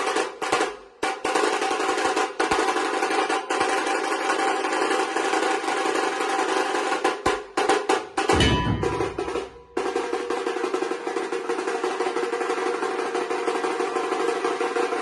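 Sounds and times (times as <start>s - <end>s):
drum ensemble playing: 8.3s - 10.1s.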